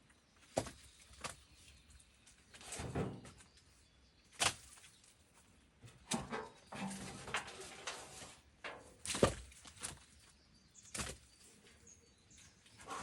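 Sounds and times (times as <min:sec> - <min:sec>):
wood scraping and shuffling: 0:02.4 - 0:03.6, 0:05.8 - 0:10.3, 0:12.4 - 0:13.0
logs knocking onto pile: 0:08.7 - 0:10.0.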